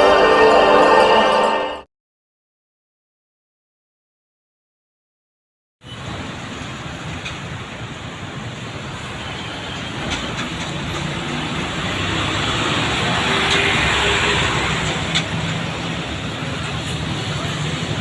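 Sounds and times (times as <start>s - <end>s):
vehicle passing close by: 10.4s - 18.0s.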